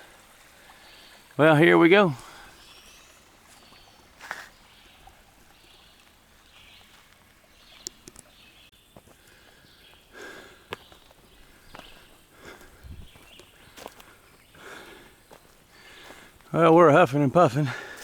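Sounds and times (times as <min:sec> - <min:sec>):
faint footsteps on steps: 0:05.4 - 0:08.2, 0:08.9 - 0:16.9, 0:17.6 - 0:18.0
hard breathing: 0:09.0 - 0:16.5, 0:17.6 - 0:18.0.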